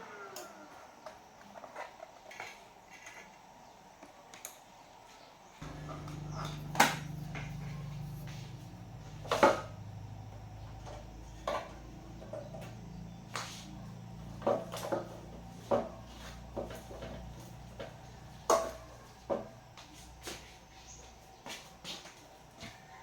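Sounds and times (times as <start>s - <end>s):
steady low hum: 5.6s - 21.8s.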